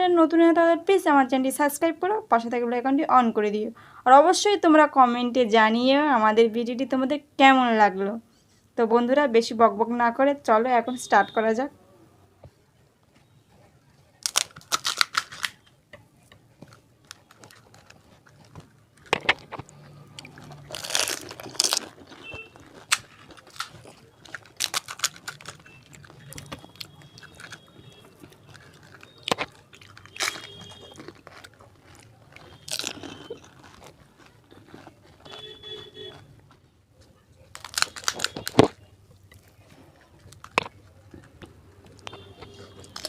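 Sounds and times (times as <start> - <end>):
crisp shells crunching: 14.2 - 15.6, 16.6 - 36.6, 37.5 - 43.0.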